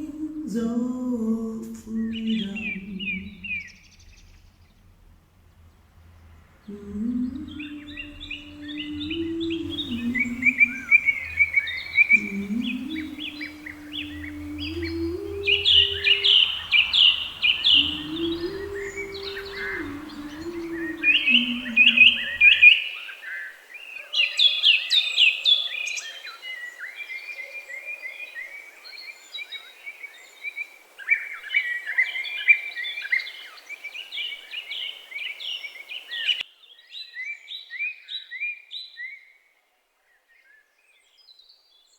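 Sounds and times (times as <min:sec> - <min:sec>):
low tone sliding down: 0:00.0 - 0:22.6
songbirds chirping and trilling: 0:00.0 - 0:30.6
background hiss: 0:00.0 - 0:37.5.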